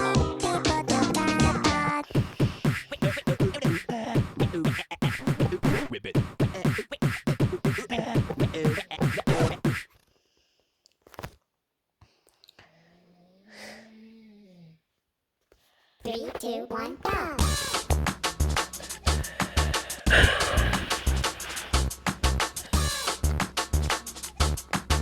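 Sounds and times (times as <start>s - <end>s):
beatboxing: 0.0s - 10.0s, 17.3s - 25.0s.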